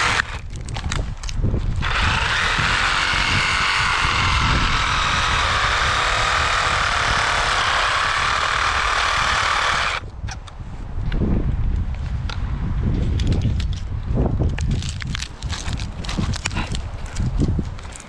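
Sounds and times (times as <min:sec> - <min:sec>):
reciprocating saw cutting wood: 0:00.0 - 0:00.5, 0:01.8 - 0:10.0.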